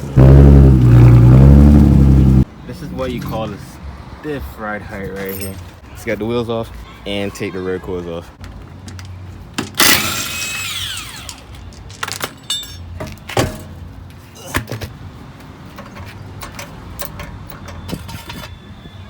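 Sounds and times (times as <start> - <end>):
impact wrench bursts: 9.8 - 11.4.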